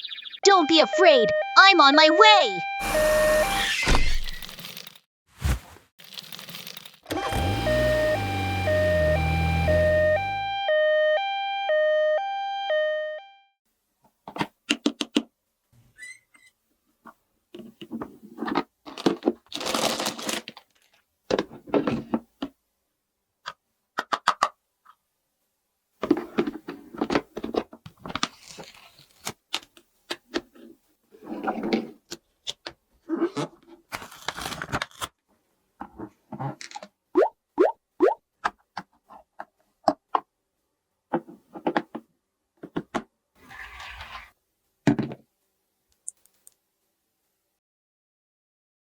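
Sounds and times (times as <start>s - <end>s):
two-note electronic tone: 2.6s - 3.7s, 7.1s - 13.3s
packaging rustling: 4.2s - 7.1s, 18.9s - 21.0s, 33.9s - 35.1s.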